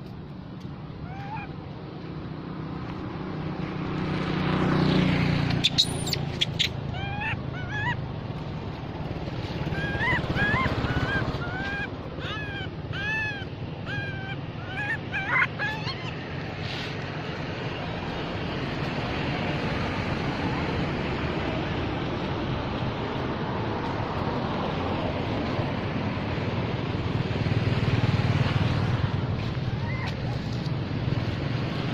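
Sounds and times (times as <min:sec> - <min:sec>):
baby monkey crying: 0:01.0 - 0:01.6, 0:05.6 - 0:08.1, 0:09.7 - 0:16.5, 0:29.7 - 0:30.5
sharp squeals: 0:05.6 - 0:07.4.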